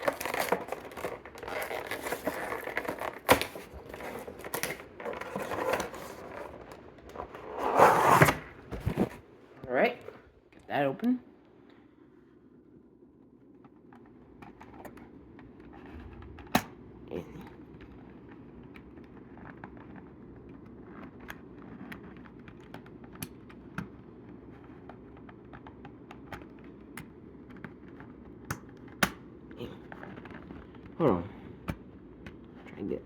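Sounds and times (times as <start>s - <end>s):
toy packaging clicks and crinkles: 0.0s - 6.8s.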